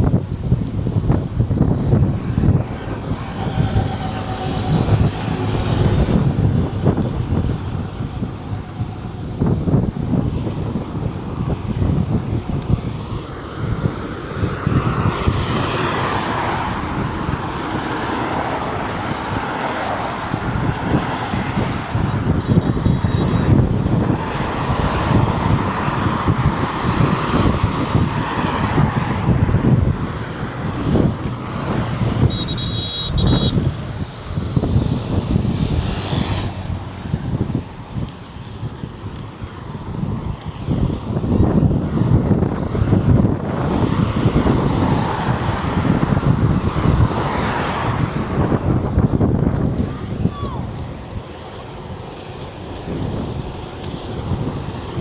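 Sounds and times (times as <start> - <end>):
traffic rumble: 0.0 - 55.0
vehicles passing: 0.0 - 55.0
high-pitched beeping: 32.3 - 33.6.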